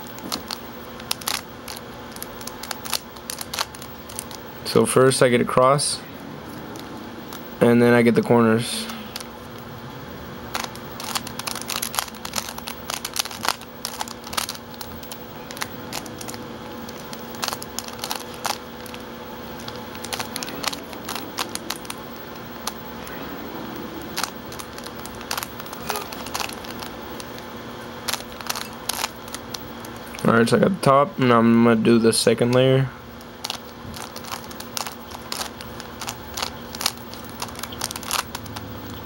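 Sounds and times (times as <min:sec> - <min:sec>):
steady low hum: 0:00.0 - 0:39.0
puzzle cube clicking: 0:33.4 - 0:38.7.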